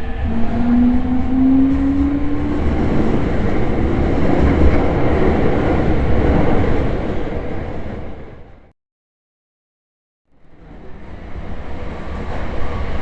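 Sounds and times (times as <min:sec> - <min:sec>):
rising whining tone: 0:00.0 - 0:04.4
train running: 0:00.0 - 0:08.6, 0:10.3 - 0:13.0
low rumble: 0:00.0 - 0:08.7.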